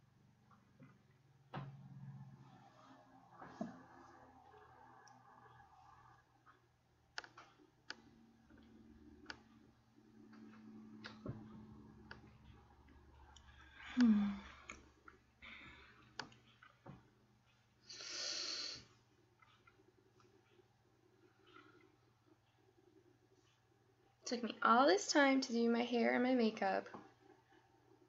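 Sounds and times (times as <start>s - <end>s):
woman yawning: 14.0s - 14.6s.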